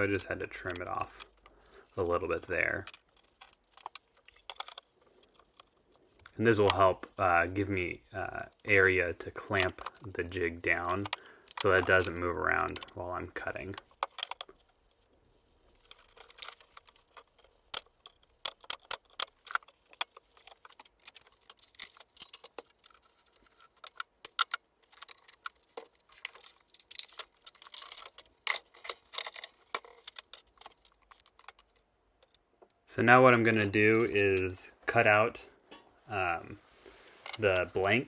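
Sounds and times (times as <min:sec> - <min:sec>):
tools and wood clicking and tapping: 0:00.2 - 0:07.2, 0:10.7 - 0:13.0, 0:13.6 - 0:15.0, 0:15.7 - 0:32.9, 0:35.6 - 0:36.0.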